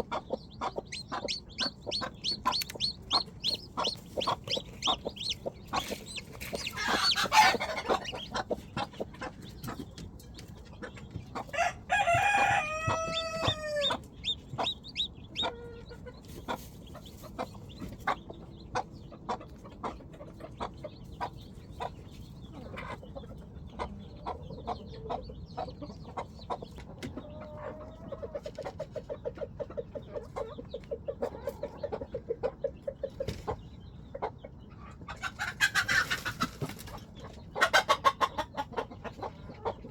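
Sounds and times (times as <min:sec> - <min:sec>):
chickens clucking: 0:00.0 - 0:39.9
rooster crowing: 0:11.6 - 0:14.0.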